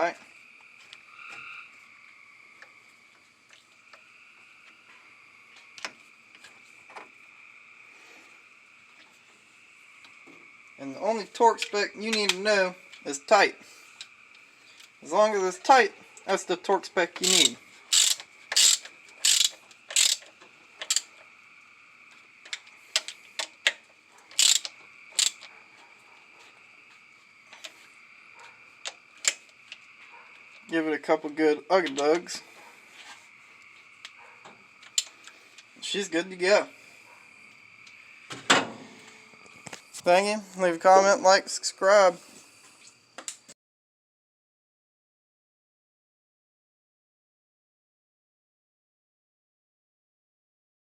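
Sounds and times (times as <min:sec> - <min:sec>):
metal clicks and taps: 0:17.2 - 0:21.2.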